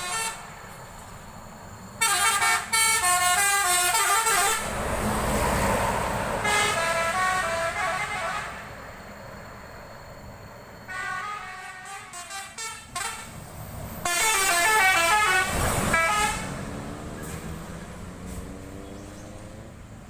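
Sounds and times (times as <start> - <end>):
multi-tone air horn melody: 0.0 - 0.5, 2.0 - 4.7, 6.4 - 8.6, 10.9 - 13.4, 14.0 - 16.6
bus engine and road noise: 0.0 - 20.0.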